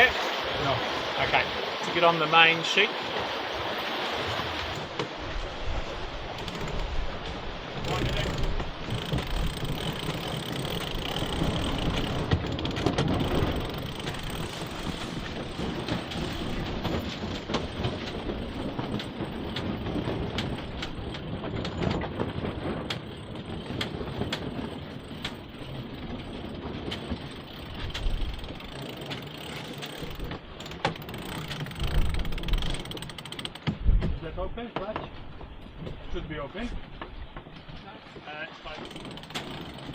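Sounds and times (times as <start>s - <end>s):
rush of wind and water: 0.0s - 39.9s
winch ratchets clicking: 6.4s - 7.0s, 7.8s - 22.0s, 22.7s - 33.7s, 38.8s - 39.9s.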